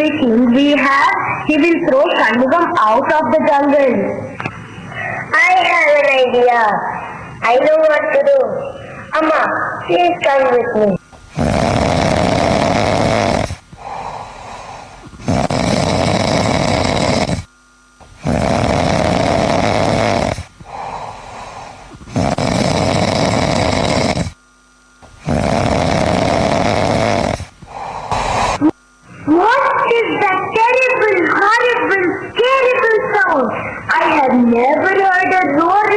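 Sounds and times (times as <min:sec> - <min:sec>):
loud exaggerated snoring: 0:11.2 - 0:17.5, 0:18.1 - 0:24.4, 0:25.0 - 0:28.8.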